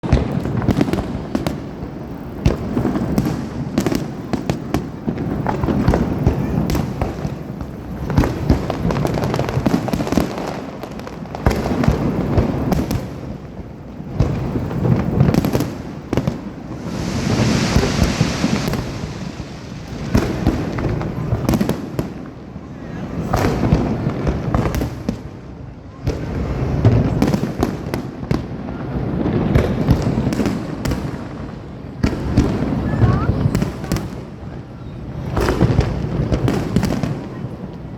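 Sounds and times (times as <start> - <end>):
fireworks bangs: 0.0 - 25.4, 26.0 - 37.9
firework hiss: 0.1 - 25.1
low rumble: 16.6 - 21.3.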